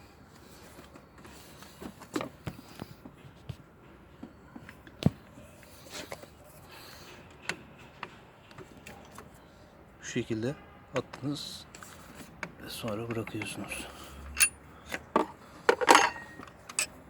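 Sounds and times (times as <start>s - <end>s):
metallic wrench clicks and knocks: 14.4s - 14.6s.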